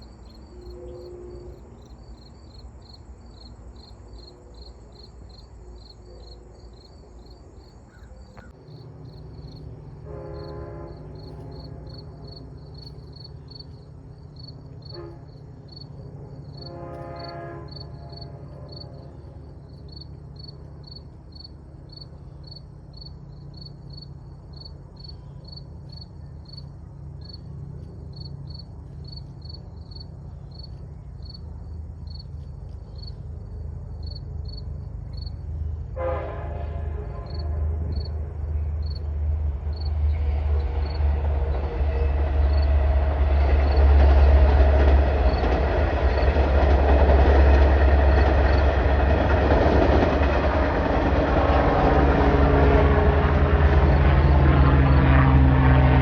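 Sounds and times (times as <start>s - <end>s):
train horn: 0.0s - 2.3s, 5.9s - 6.7s, 9.8s - 13.1s, 14.8s - 15.7s, 16.4s - 19.7s, 35.6s - 48.4s, 49.0s - 56.0s
crickets chirping: 0.0s - 50.3s
diesel train engine hum: 0.0s - 56.0s
wheels rumbling on rails: 0.0s - 56.0s.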